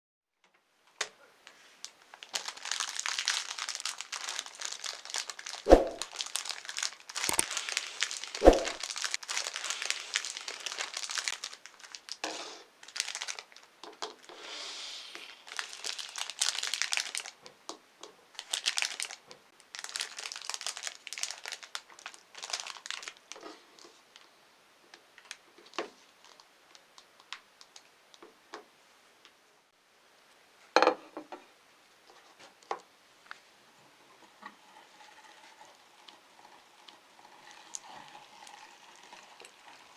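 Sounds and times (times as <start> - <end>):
plastic packaging crinkling: 1.4 - 14.3, 15.1 - 17.5, 18.3 - 24.3, 25.2 - 27.9.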